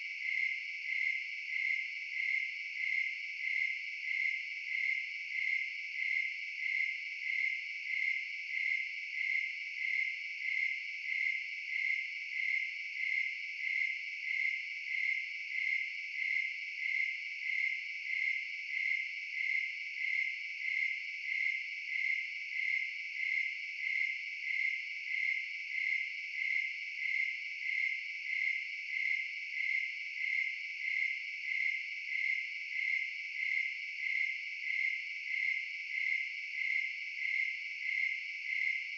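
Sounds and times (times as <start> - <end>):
crickets chirping: 0.2 - 38.9.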